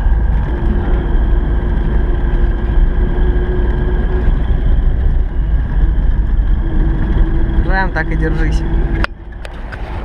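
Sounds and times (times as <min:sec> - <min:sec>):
car engine drone: 0:00.0 - 0:10.0
low road rumble: 0:00.0 - 0:10.0.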